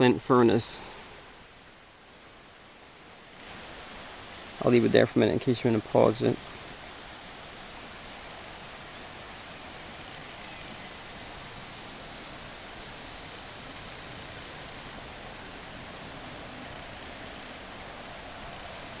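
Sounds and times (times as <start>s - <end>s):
steady outdoor background hiss: 0.0s - 19.0s.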